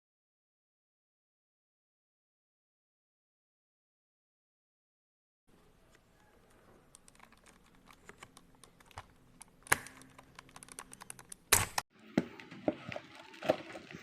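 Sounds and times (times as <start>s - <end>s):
mechanical keyboard typing: 6.9s - 11.8s.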